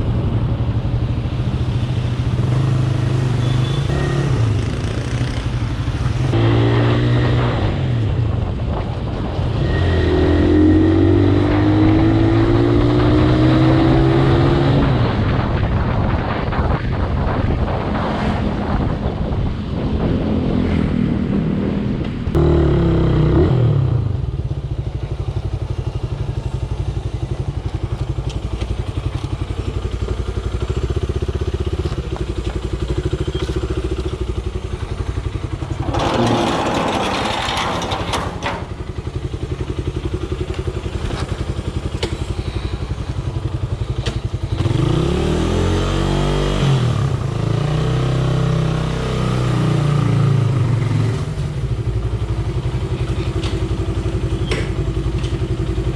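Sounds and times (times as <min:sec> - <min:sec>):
vehicle engine revving: 0:09.6 - 0:15.2, 0:35.7 - 0:38.0, 0:44.5 - 0:51.5.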